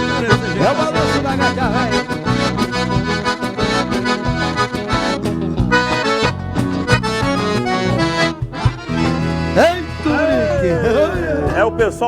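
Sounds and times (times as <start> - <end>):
accordion melody: 0.0 - 12.0
band playing: 0.0 - 12.0
drum beats: 0.0 - 12.0.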